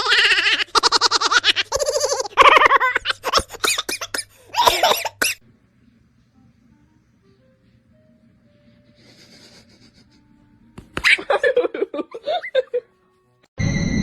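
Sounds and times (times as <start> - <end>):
person giggling: 0.0 - 5.1, 9.0 - 10.4, 11.0 - 12.9.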